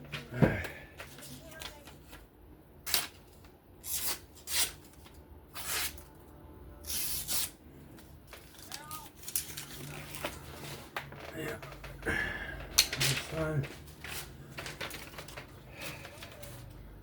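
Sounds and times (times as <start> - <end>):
knife blade slicing paper: 3.8 - 6.1, 6.8 - 7.6.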